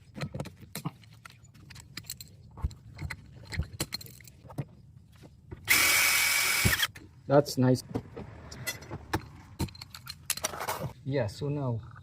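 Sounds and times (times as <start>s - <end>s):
small metal parts clinking: 0.1s - 4.9s, 8.6s - 11.0s.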